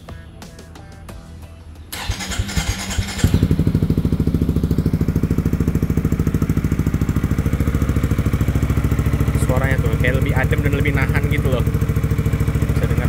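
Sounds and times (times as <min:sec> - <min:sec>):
scooter engine idling: 0:00.0 - 0:13.0
starter cranking: 0:01.8 - 0:13.0.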